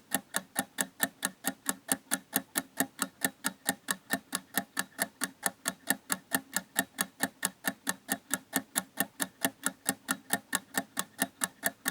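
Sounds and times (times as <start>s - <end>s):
fast clockwork ticking: 8.6s - 11.9s.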